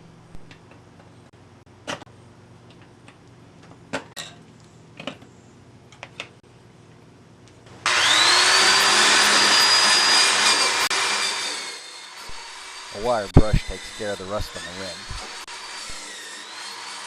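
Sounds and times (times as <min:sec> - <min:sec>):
light knocks and clicks of parts: 0:05.9 - 0:06.4
power tool wire brush scrubbing metal: 0:07.9 - 0:17.0.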